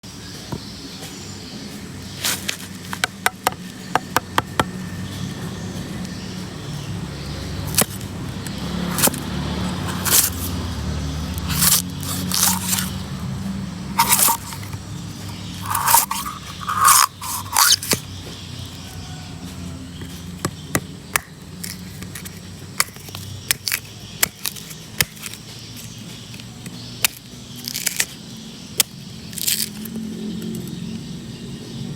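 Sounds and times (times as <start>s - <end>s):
knocks and cracks on coconut shell: 2.9s - 4.8s, 7.6s - 10.6s, 14.0s - 18.6s, 20.0s - 30.8s
scraping and crunching: 7.6s - 30.8s.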